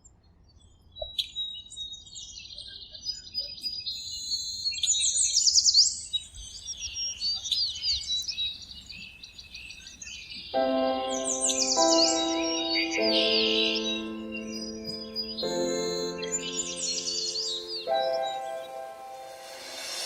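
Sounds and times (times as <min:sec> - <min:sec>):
songbirds chirping and singing: 0:06.0 - 0:19.4.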